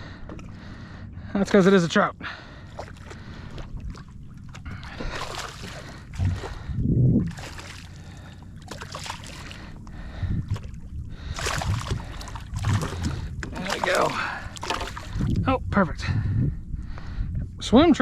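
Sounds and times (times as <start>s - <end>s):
light water splashing: 2.6s - 15.4s.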